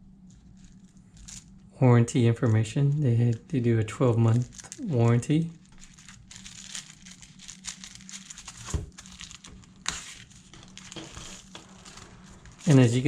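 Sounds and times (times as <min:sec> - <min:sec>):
paper and packaging crinkling: 0:00.3 - 0:01.6, 0:04.1 - 0:13.0.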